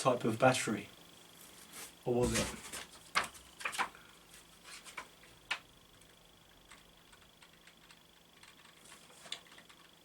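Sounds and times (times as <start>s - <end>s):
small ticks and clicks: 4.9s - 10.0s.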